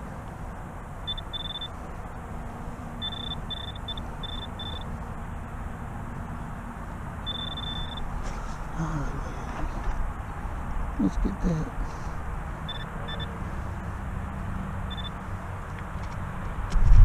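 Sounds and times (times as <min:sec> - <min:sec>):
metal detector beeps: 0:01.1 - 0:01.7, 0:03.0 - 0:04.9, 0:07.3 - 0:08.1, 0:12.7 - 0:13.3, 0:14.9 - 0:15.2
wind rumble: 0:16.5 - 0:17.0.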